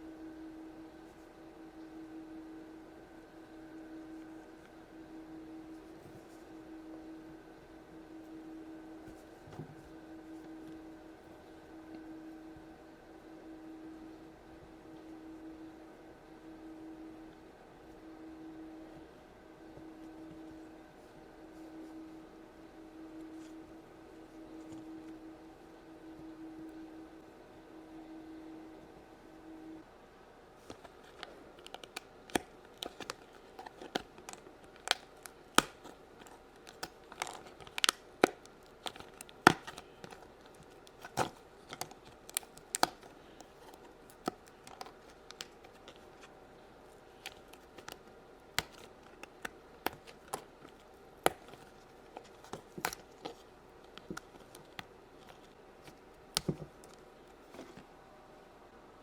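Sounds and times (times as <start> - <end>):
clicks and taps of handled pieces: 48.6 - 57.8.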